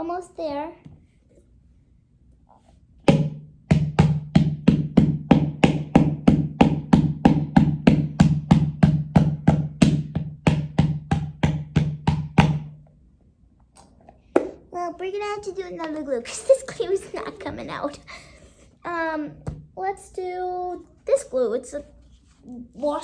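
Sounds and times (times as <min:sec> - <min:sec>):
wood-block percussive beat: 0:03.1 - 0:12.8.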